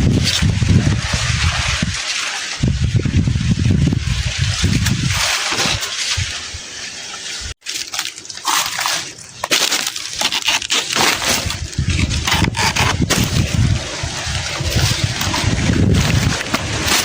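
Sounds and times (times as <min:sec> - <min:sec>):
wind buffeting microphone: 0:00.0 - 0:02.0, 0:02.6 - 0:05.3, 0:11.4 - 0:17.0
outdoor rustling: 0:04.2 - 0:17.0.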